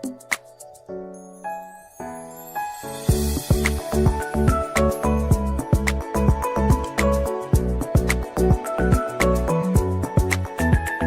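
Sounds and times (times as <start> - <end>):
bass drum beat: 3.1 - 6.9, 7.6 - 9.0.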